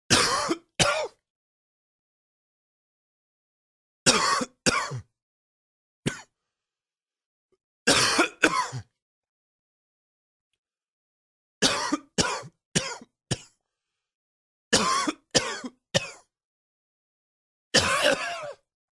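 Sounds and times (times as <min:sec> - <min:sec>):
man coughing: 0:00.1 - 0:01.2, 0:04.1 - 0:05.1, 0:07.9 - 0:08.8, 0:11.6 - 0:13.5, 0:14.8 - 0:16.3, 0:17.8 - 0:18.6.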